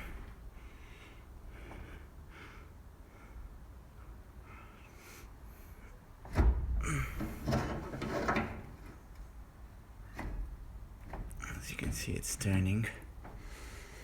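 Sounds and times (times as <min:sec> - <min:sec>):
metallic clattering and scraping: 0:06.2 - 0:14.0.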